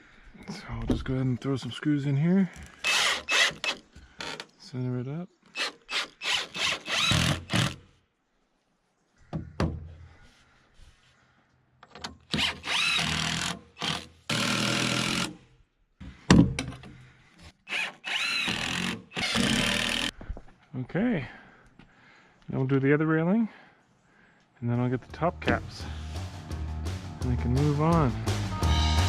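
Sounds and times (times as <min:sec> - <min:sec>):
power drill driving screws: 0:02.7 - 0:04.5, 0:05.5 - 0:07.8, 0:12.3 - 0:15.4, 0:17.7 - 0:20.1.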